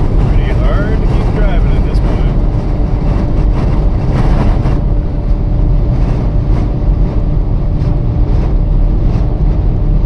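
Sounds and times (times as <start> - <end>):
faint engine hum: 0.0 - 10.0
wind and road noise rumble: 0.0 - 10.0.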